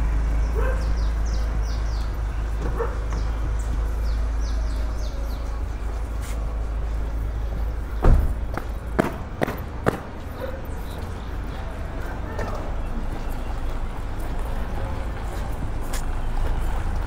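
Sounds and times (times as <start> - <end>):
small birds chirping: 0.0 - 8.9, 10.2 - 16.1
steady low rumble: 0.0 - 17.0
sharp thump: 8.0 - 8.4.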